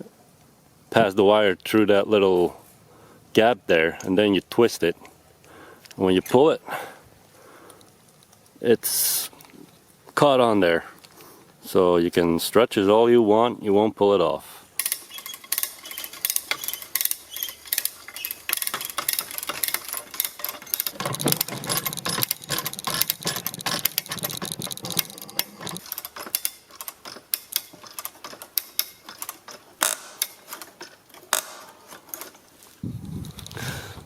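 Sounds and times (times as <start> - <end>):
ratchet clicking: 14.8 - 31.6.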